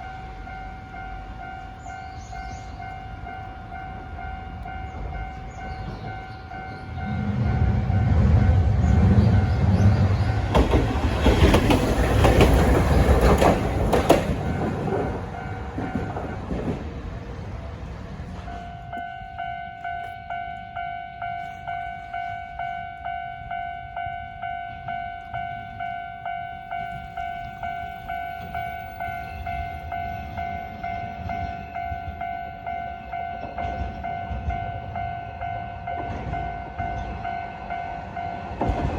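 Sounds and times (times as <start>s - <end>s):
streetcar wheels rumbling on rails: 0.0s - 38.9s
level-crossing bell ringing: 18.4s - 38.9s.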